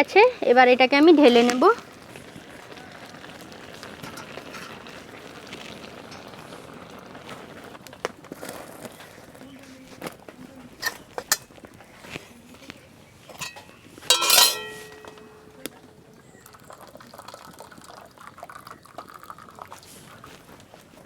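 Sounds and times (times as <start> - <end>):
hot water pouring: 0.6 - 9.4, 10.0 - 11.9, 13.2 - 21.0
metal pot clanking: 3.6 - 7.0, 10.8 - 11.6, 13.2 - 15.8
loud ringing clang: 13.4 - 15.6.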